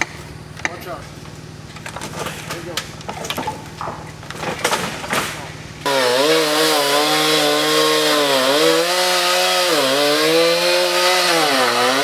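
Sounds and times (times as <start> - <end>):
power saw cutting: 5.8 - 12.0.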